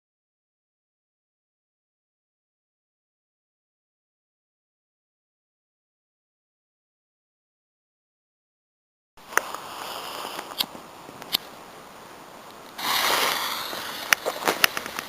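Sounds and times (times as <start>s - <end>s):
firework hissing and crackling: 9.2s - 10.7s, 12.8s - 15.0s
firework clicks: 9.2s - 11.6s, 12.4s - 15.0s.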